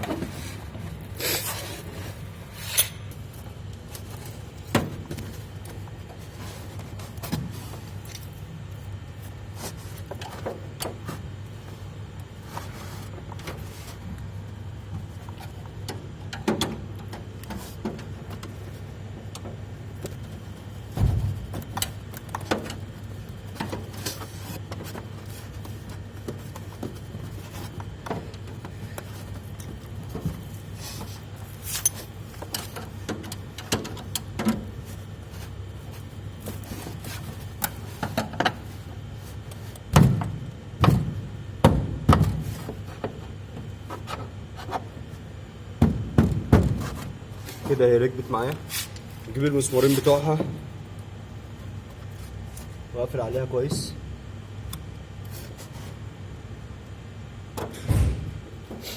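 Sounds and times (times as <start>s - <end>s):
steady low hum: 0.0s - 58.9s
metal clicks and scrapes: 2.5s - 3.2s.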